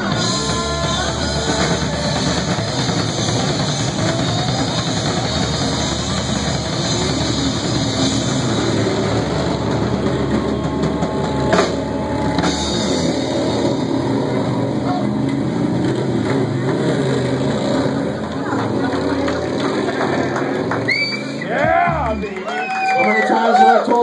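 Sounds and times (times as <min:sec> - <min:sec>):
electric guitar sliding in pitch: 0:00.0 - 0:15.8
deep bass: 0:00.0 - 0:22.9
drums: 0:00.0 - 0:24.0.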